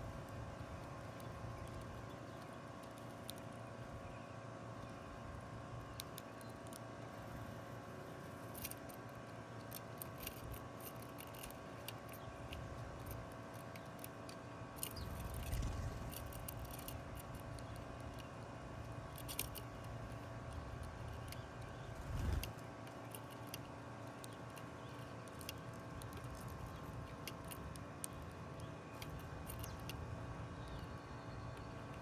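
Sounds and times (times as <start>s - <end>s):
sharp little clicks and snips: 0.0s - 4.1s, 4.7s - 32.0s
faint steady hum: 0.0s - 32.0s
low rumble: 14.9s - 18.1s, 21.6s - 22.5s.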